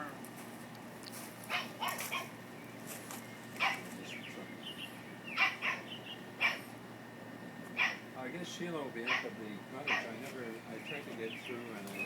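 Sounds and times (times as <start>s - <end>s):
puppy barking and yipping: 1.4s - 2.4s, 3.6s - 3.9s, 5.3s - 6.7s, 7.8s - 8.1s, 9.0s - 10.1s.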